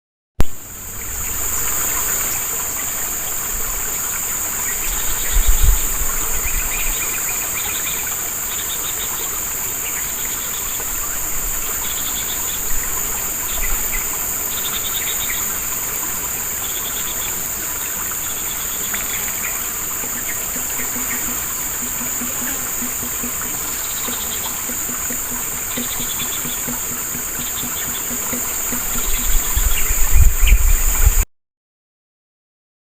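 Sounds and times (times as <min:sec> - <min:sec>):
small stream rushing: 0:00.4 - 0:31.2
crickets trilling: 0:00.6 - 0:31.2
bird chirps: 0:18.2 - 0:30.9.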